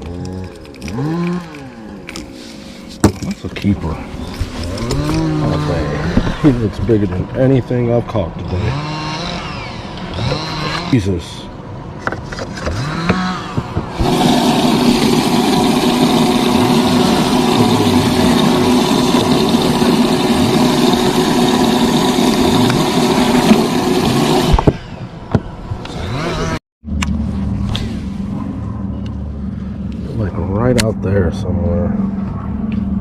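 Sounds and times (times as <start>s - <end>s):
boat motor running: 4.1s - 11.0s, 12.7s - 24.8s.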